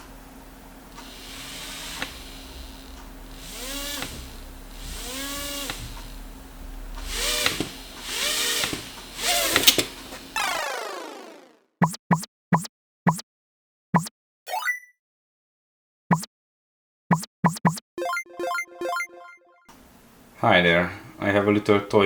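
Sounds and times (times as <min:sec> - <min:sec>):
steady low hum: 0:00.0 - 0:10.5
quadcopter motors whining: 0:01.0 - 0:11.6.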